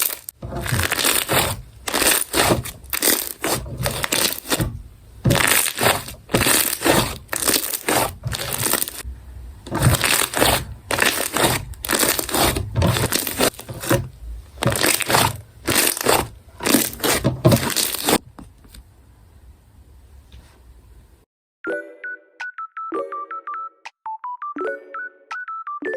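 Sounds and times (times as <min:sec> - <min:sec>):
slime crackling and popping: 0:00.0 - 0:04.7, 0:05.3 - 0:09.0, 0:09.7 - 0:13.9, 0:14.6 - 0:18.2.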